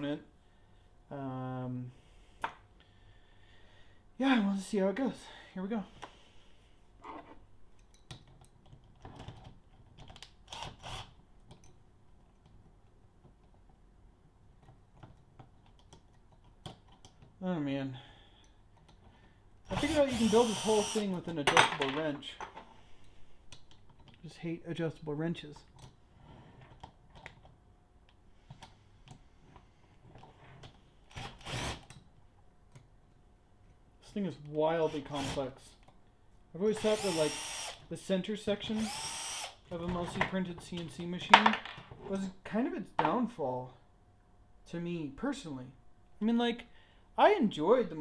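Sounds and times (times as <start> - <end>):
tools and hard parts clattering: 21.4 - 22.7.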